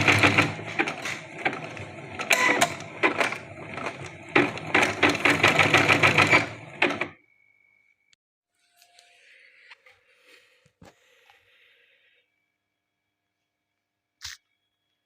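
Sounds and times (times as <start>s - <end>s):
embroidery machine needle clatter: 0.0s - 7.1s.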